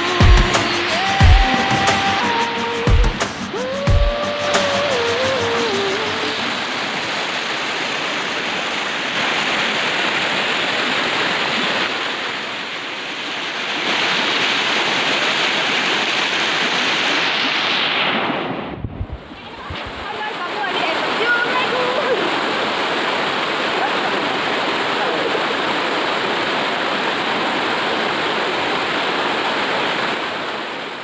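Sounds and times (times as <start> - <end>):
waterfall rushing: 0.0 - 31.0
low thumps: 18.7 - 20.0.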